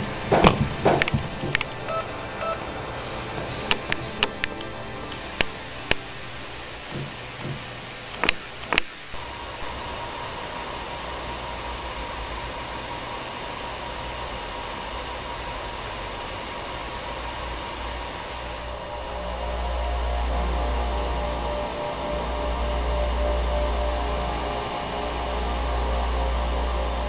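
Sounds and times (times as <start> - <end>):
faint steady tone: 5.0 - 19.2
rushing air hiss: 5.0 - 19.5
low hum: 5.0 - 20.3.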